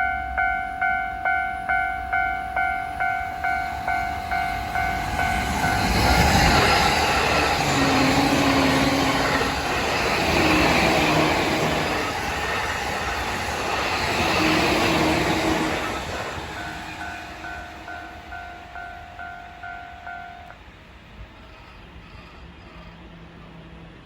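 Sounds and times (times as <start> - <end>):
crossing alarm bell ringing: 0.0 - 10.1, 14.4 - 20.6
train wheels rumbling on rail: 1.7 - 24.0.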